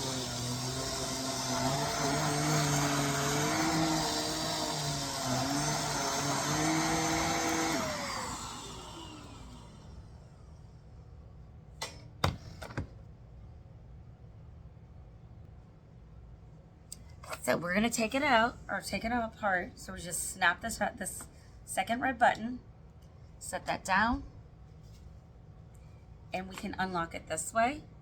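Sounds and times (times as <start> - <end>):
handheld vacuum motor hum: 0.0 - 9.9
motor winding down whine: 0.0 - 10.2.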